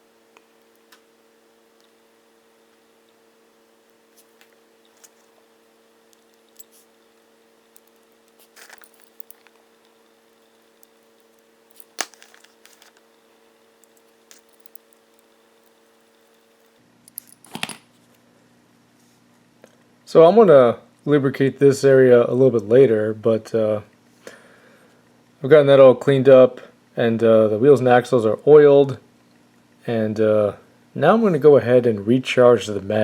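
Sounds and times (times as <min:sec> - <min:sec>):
low electrical hum: 0:00.0 - 0:33.0
small parts clicking and tapping: 0:03.9 - 0:05.4, 0:06.1 - 0:17.8.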